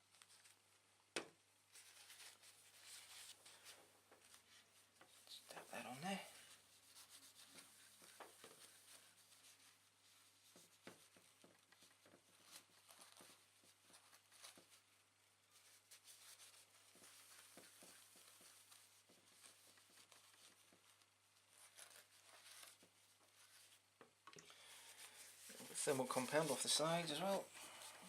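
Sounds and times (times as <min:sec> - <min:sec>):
paper rubbing: 0:01.7 - 0:23.8, 0:24.6 - 0:28.0.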